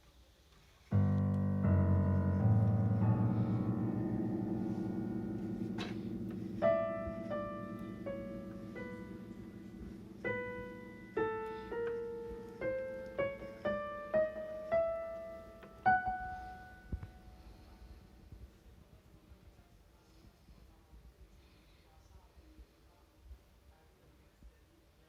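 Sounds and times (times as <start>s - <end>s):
digital piano melody over chord: 0.9s - 18.4s.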